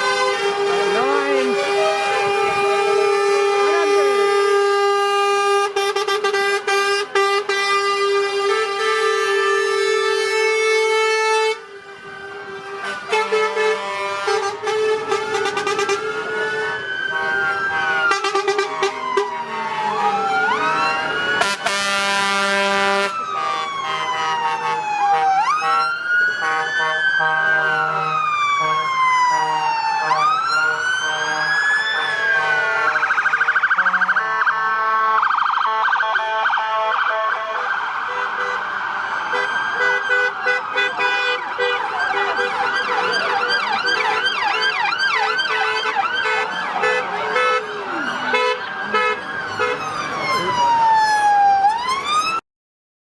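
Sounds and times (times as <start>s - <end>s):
blaring horn blast: 0.0s - 11.7s, 12.6s - 20.0s, 21.4s - 38.7s, 39.3s - 50.0s
siren wailing and yelping: 0.9s - 4.0s, 16.2s - 21.5s, 23.1s - 34.4s, 35.1s - 52.4s.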